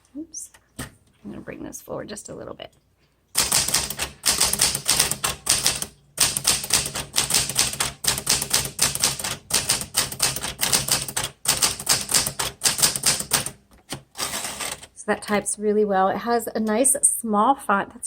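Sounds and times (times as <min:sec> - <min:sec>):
manual typewriter keystrokes: 0:03.4 - 0:14.9.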